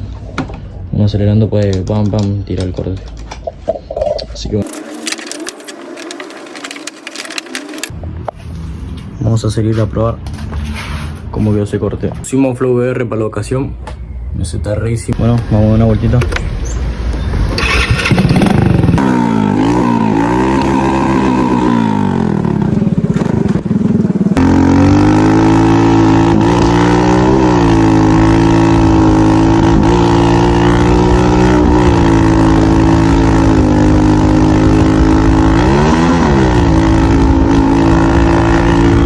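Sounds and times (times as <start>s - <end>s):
motorcycle engine running: 4.6s - 7.9s, 17.3s - 39.0s.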